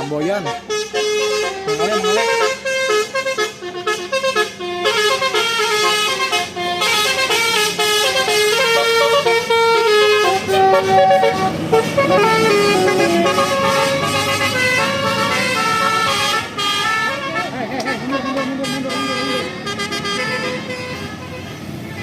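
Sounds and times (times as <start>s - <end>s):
bus engine running: 0.0s - 22.0s
bus horn playing melody: 0.0s - 22.0s.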